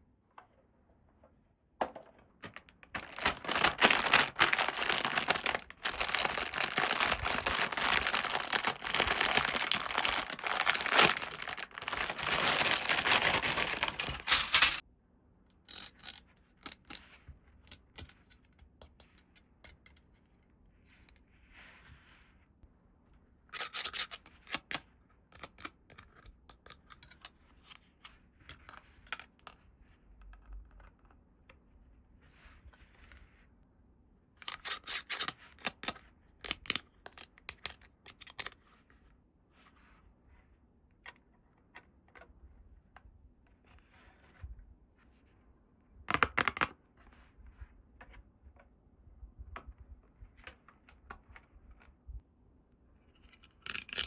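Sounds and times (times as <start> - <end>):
plastic toy parts clicking: 2.4 - 14.8, 15.7 - 17.0, 53.4 - 54.0
packaging crinkling and tearing: 2.8 - 14.8.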